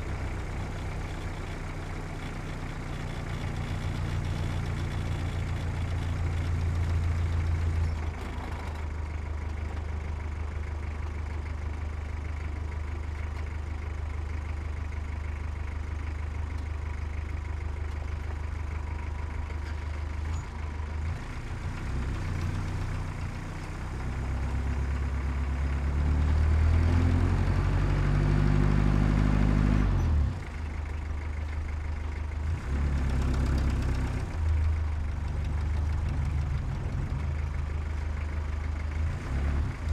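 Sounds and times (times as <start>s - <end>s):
heavy truck engine revving: 24.6s - 30.4s, 32.4s - 34.5s, 38.9s - 39.9s.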